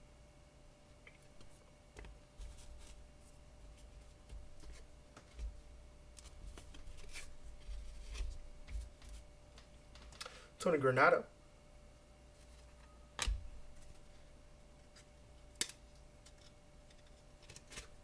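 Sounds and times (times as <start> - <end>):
cards rustling and tapping: 3.8 - 10.3.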